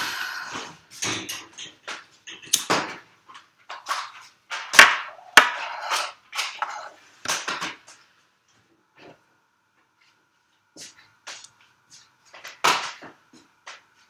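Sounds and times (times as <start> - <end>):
objects knocking and scraping: 0.5 - 8.0.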